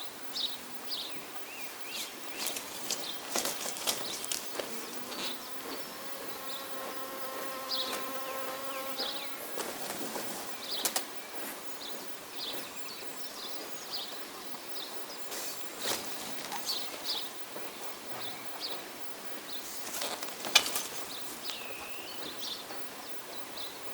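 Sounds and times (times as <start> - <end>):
flying insect buzzing: 1.9 - 13.2.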